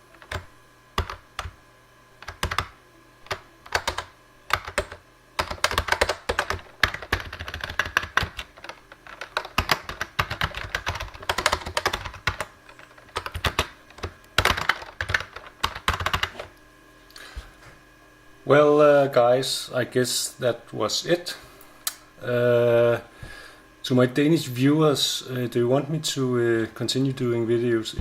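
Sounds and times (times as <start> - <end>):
keyboard typing: 0.1 - 1.6, 2.2 - 16.5.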